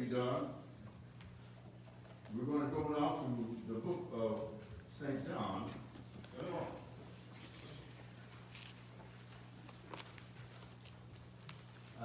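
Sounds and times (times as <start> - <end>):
low electrical hum: 0.0 - 12.0
soft rustle: 4.6 - 12.0.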